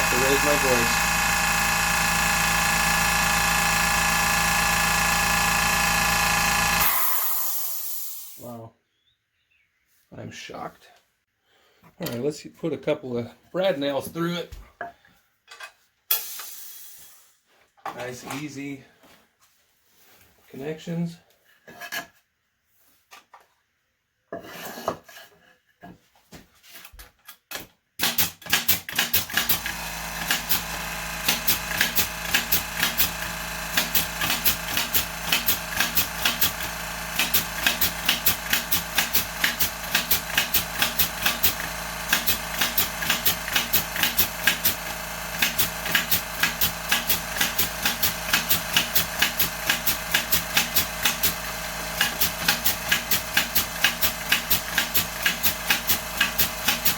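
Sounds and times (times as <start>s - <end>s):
air compressor motor running: 0.0s - 8.4s, 28.9s - 56.9s.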